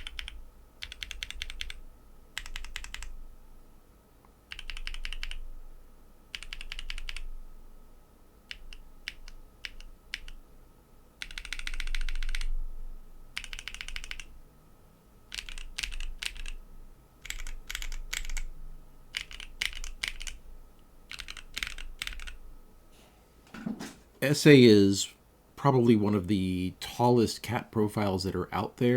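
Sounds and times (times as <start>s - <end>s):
mechanical keyboard typing: 0.0s - 1.8s, 2.4s - 3.2s, 4.5s - 5.4s, 6.3s - 7.3s, 8.5s - 10.4s, 11.2s - 12.5s, 13.4s - 14.3s, 15.3s - 16.6s, 17.2s - 18.5s, 19.1s - 20.4s, 21.1s - 22.4s.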